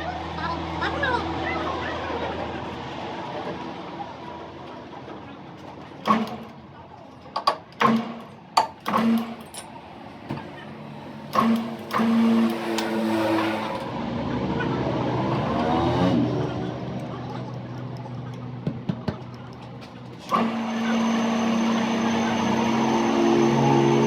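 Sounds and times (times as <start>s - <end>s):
machine motor humming: 10.4s - 14.0s, 20.2s - 24.0s.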